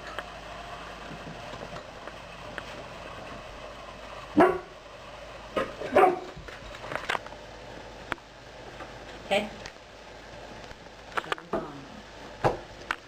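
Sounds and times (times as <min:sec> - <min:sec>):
dog barking: 0:04.4 - 0:04.7, 0:05.9 - 0:06.3.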